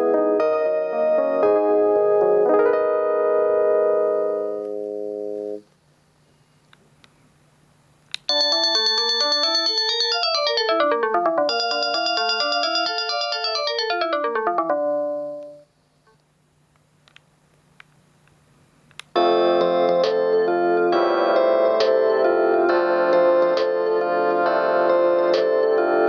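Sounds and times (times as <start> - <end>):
electronic ringtone melody: 8.3 - 15.6
phone ringtone chord: 8.3 - 15.6, 19.2 - 23.5.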